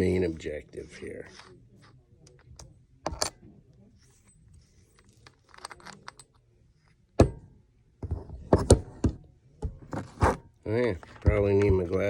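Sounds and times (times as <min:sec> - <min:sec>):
metallic clicks and clinks: 0:04.2 - 0:06.5.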